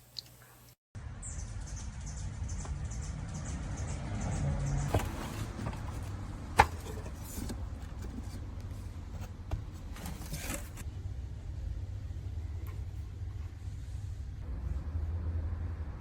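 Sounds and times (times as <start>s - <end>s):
light scraping: 4.9s - 10.9s
low steady hum: 4.9s - 16.0s.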